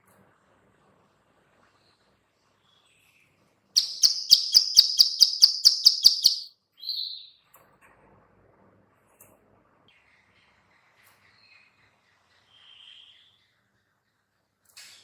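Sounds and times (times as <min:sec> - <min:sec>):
bird rapid clicking call: 0:03.8 - 0:07.3.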